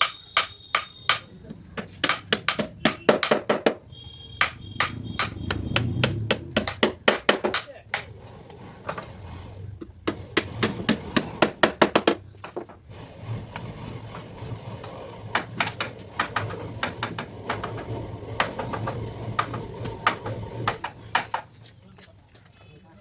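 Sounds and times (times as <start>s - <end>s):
hammering on wood: 0.0s - 3.8s, 4.4s - 8.2s, 10.0s - 12.8s, 14.8s - 21.5s.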